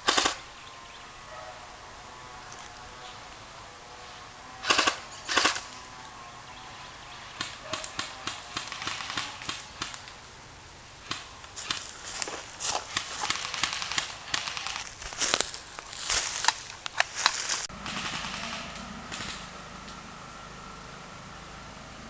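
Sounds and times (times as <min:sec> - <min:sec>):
airsoft guns firing: 0:00.0 - 0:00.4, 0:04.6 - 0:05.7, 0:07.4 - 0:10.1, 0:12.6 - 0:15.0, 0:17.7 - 0:19.5.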